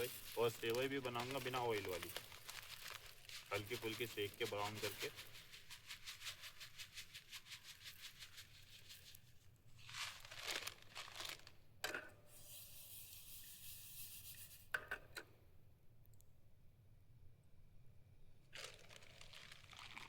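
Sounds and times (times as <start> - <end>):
even crackle: 0.0 - 5.2
plastic packet crinkling: 0.0 - 9.1, 9.8 - 11.6, 18.5 - 20.0
packet rustling: 0.0 - 9.2, 9.8 - 11.6, 18.6 - 20.0.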